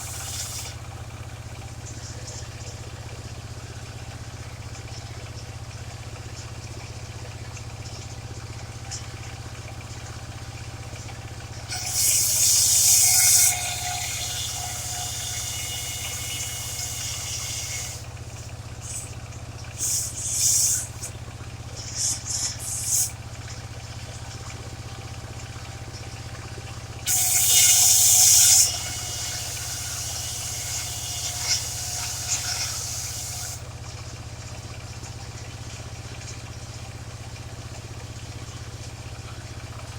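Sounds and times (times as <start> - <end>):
saw blade cutting timber: 0.0 - 0.8, 11.7 - 19.1, 19.8 - 21.2, 21.8 - 23.2, 27.1 - 33.6
sawmill engine running: 0.0 - 7.1, 7.7 - 34.3.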